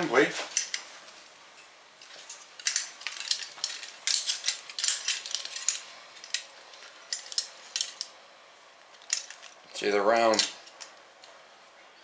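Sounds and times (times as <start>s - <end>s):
metal lock parts clinking: 0.5s - 0.9s, 1.6s - 8.2s, 8.8s - 11.4s.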